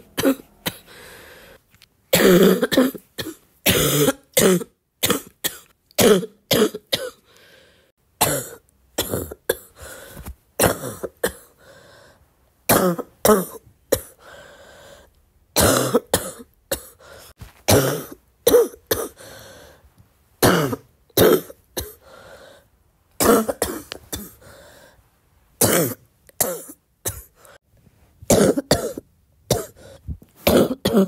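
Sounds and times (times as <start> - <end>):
woman coughing wetly: 0.0 - 0.9, 2.1 - 7.2, 8.2 - 9.8, 10.6 - 11.6, 12.7 - 14.2, 15.6 - 17.0, 17.7 - 19.2, 20.4 - 22.0, 23.2 - 24.4, 25.6 - 27.4, 28.3 - 29.8, 30.4 - 31.0.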